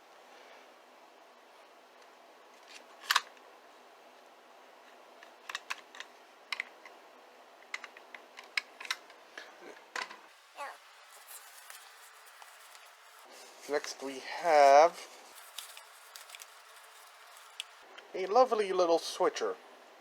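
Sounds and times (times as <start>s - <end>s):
rubbing squeaks: 10.4s - 14.0s
plastic items clicking: 15.3s - 17.8s.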